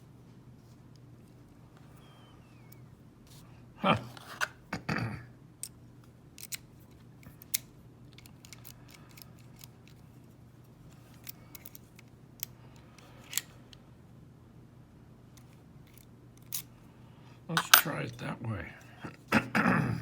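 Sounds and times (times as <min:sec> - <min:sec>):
lock picks clicking: 0:06.4 - 0:06.7, 0:07.3 - 0:10.0, 0:11.1 - 0:12.5
handling noise: 0:17.5 - 0:18.0.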